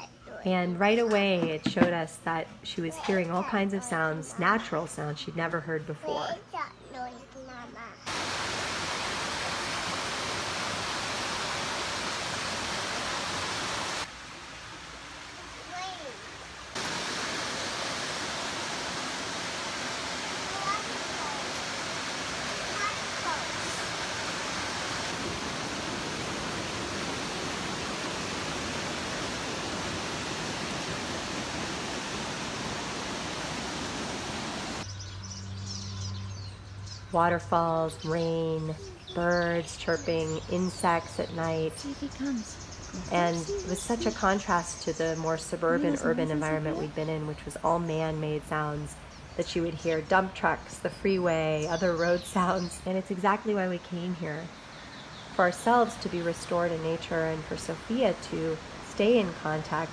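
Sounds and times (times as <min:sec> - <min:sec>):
rushing water: 0:08.1 - 0:34.9, 0:51.6 - 0:59.9.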